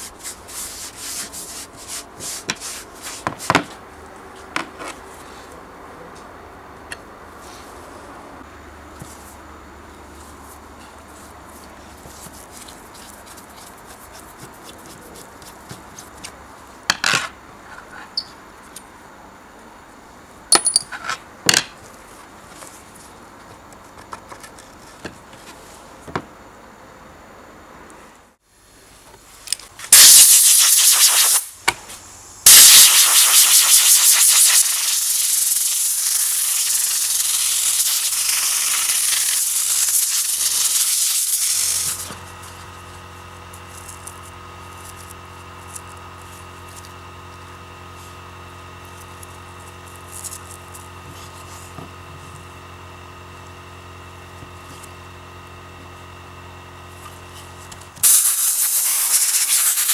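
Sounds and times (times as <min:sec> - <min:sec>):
compressed air hissing: 0:29.9 - 0:42.2, 0:58.0 - 0:59.9.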